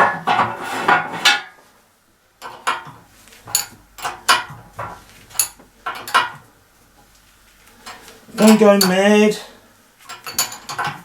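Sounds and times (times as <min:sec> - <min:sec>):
spanner clinking on metal fitting: 0:03.5 - 0:04.5, 0:05.3 - 0:06.4, 0:07.8 - 0:09.0, 0:10.1 - 0:11.0.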